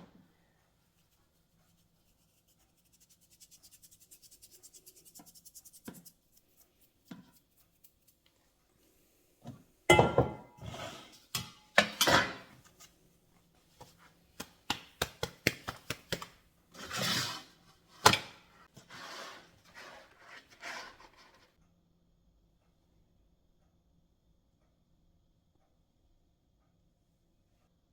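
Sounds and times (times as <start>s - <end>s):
dishes knocking and clattering: 9.9s - 10.7s, 11.4s - 12.6s
utensils scraping hard surface: 10.6s - 12.5s, 16.8s - 21.5s.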